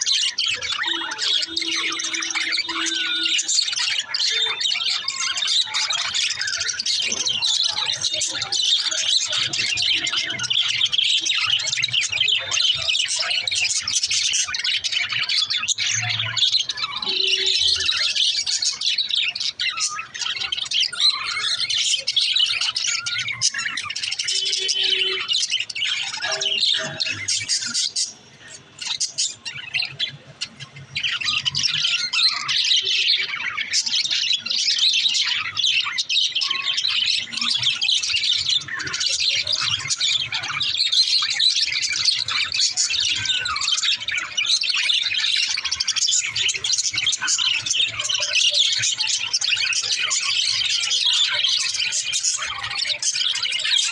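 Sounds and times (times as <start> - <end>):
budgerigars chirping and chattering: 0.0 - 53.9.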